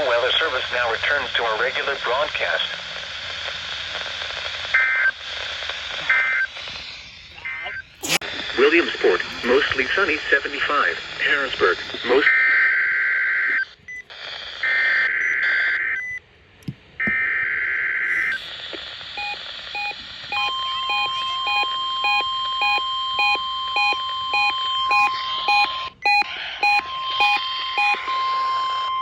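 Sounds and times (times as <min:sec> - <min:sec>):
radio receiver alarm beeps: 0:08.6 - 0:16.2, 0:17.0 - 0:29.0
steady warning alarm tone: 0:08.6 - 0:16.2, 0:17.0 - 0:29.0
buzzing data bursts: 0:18.0 - 0:29.0.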